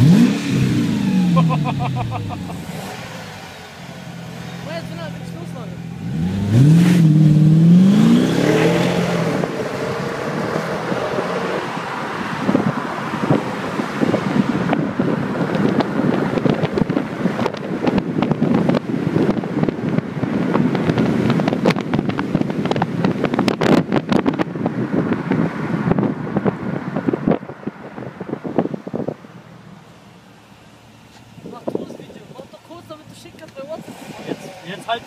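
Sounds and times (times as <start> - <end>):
car engine accelerating: 0.0 - 35.0
wind on microphone: 6.3 - 29.3.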